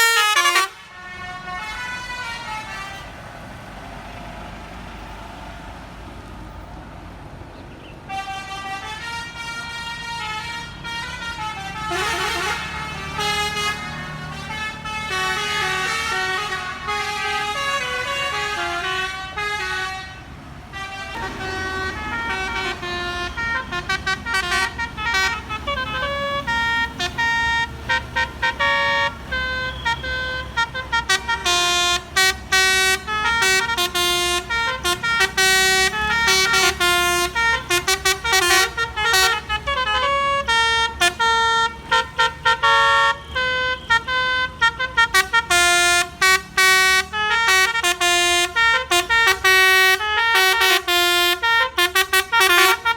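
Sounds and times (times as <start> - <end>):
bus horn playing a melody: 0.0 - 3.4, 8.1 - 52.9
bus engine running: 0.0 - 52.9.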